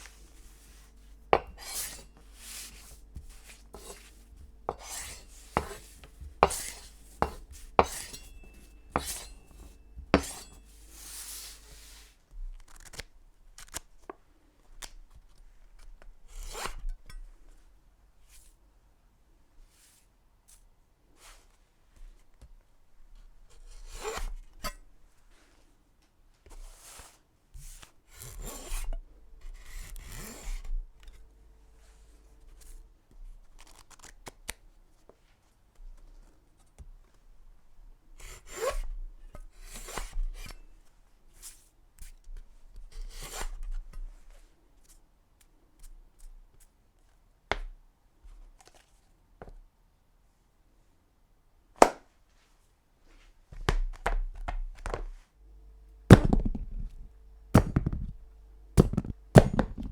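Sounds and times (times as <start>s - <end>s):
knife blade rasping strokes: 0.0s - 12.0s.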